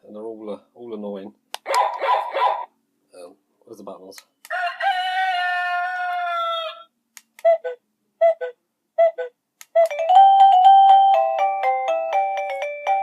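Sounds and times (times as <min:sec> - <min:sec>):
rooster crow ringtone: 0:04.6 - 0:06.9.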